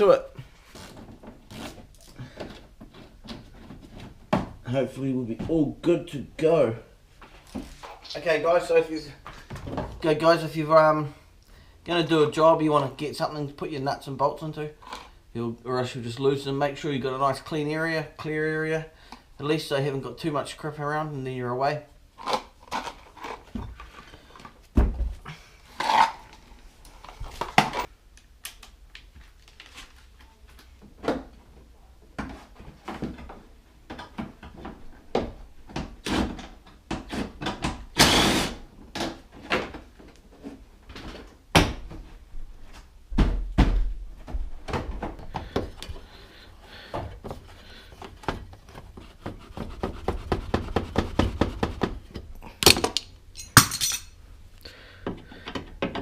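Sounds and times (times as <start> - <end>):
hand tools and metal parts clunking: 52.0 - 54.2.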